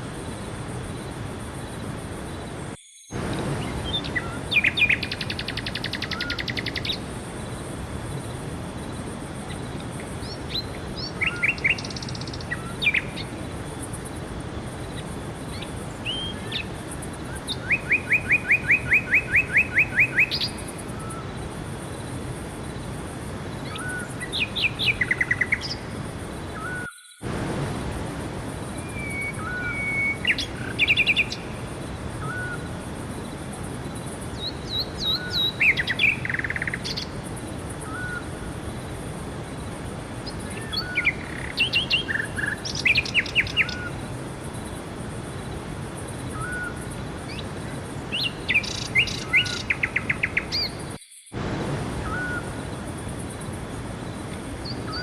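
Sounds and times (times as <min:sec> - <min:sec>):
steady background hiss: 0:00.0 - 0:55.0
songbirds singing trilled phrases: 0:03.1 - 0:07.1, 0:09.4 - 0:13.5, 0:15.5 - 0:21.4, 0:23.5 - 0:25.9, 0:28.8 - 0:31.6, 0:33.9 - 0:37.2, 0:40.2 - 0:44.8, 0:46.1 - 0:51.0.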